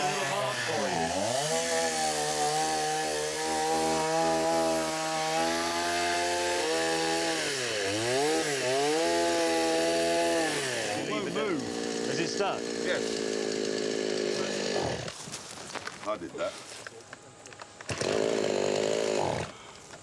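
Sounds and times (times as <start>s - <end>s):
chainsaw cutting wood: 0.0s - 15.2s, 17.8s - 20.0s.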